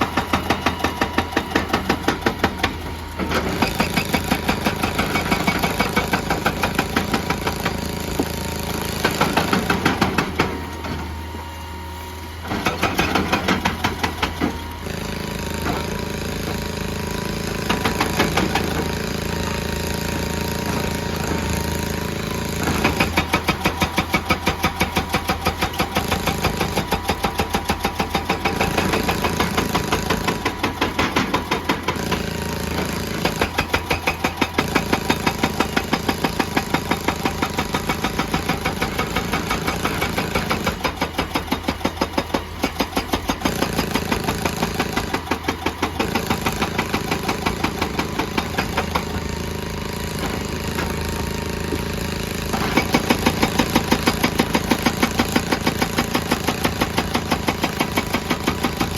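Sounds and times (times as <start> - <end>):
hydraulic breaker hammering rock: 0.0 - 11.4, 12.4 - 58.9
diesel engine running: 0.0 - 58.9.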